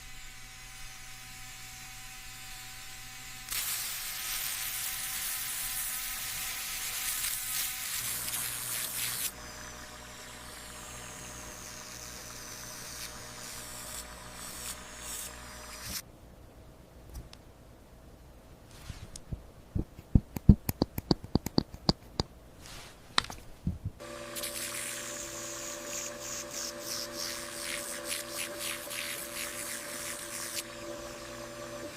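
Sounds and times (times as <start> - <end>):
hissing spray: 3.5 - 6.0, 24.0 - 30.7
faint steady hum: 7.9 - 31.9.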